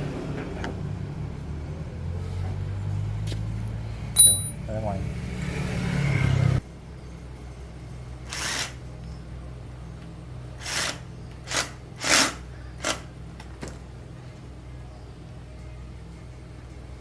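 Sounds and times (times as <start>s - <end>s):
small engine running: 10.6s - 13.1s.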